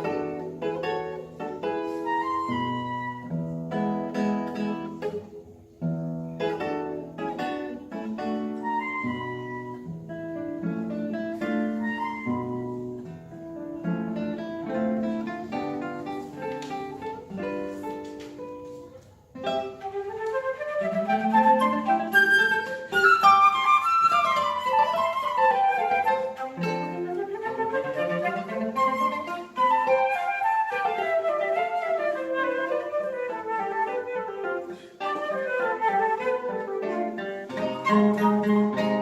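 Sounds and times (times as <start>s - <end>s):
flute: 0.0s - 3.6s, 7.7s - 10.0s, 10.6s - 13.0s, 19.4s - 39.0s
classical guitar plucked notes: 0.0s - 39.0s.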